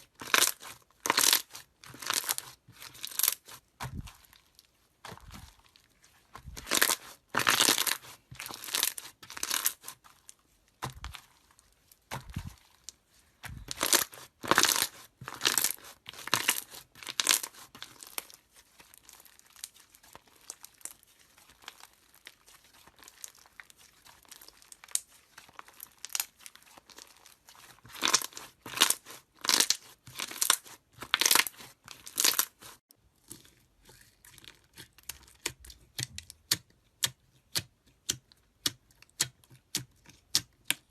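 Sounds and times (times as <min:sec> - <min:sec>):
slime squishing and popping: 0:00.0 - 0:05.8, 0:06.4 - 0:10.0, 0:12.0 - 0:18.4.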